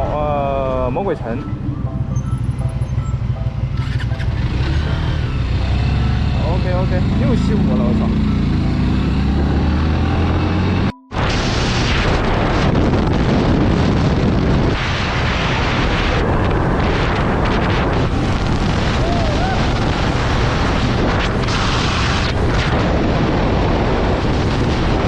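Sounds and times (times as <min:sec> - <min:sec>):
motorcycle engine: 0:01.4 - 0:24.8
wind buffeting microphone: 0:11.2 - 0:25.0.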